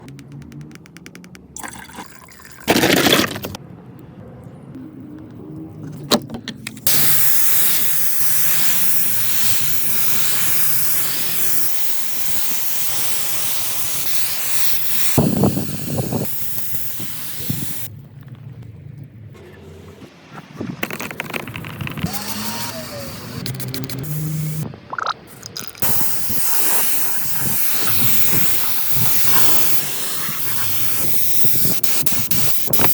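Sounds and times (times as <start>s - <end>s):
spraying hiss: 6.9s - 17.9s, 22.1s - 24.6s, 25.8s - 32.9s.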